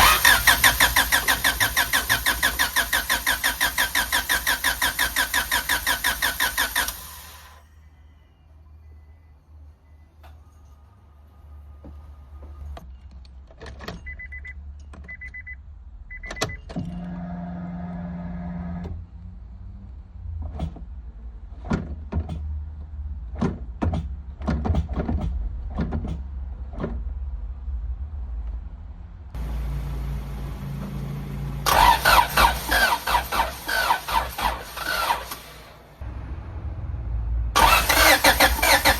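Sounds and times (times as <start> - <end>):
starter cranking engine: 0.0 - 7.6, 29.4 - 36.0, 37.6 - 38.9.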